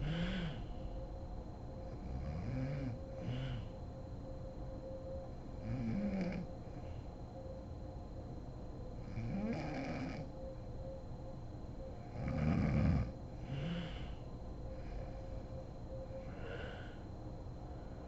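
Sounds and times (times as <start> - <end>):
woman snoring: 0.0 - 0.7, 2.1 - 3.7, 5.6 - 6.5, 9.1 - 10.3, 12.2 - 14.2.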